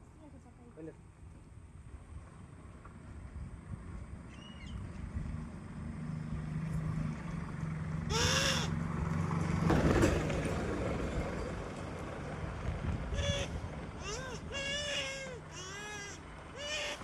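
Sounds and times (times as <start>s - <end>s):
bleat-like animal call: 8.1s - 8.8s, 13.1s - 17.0s.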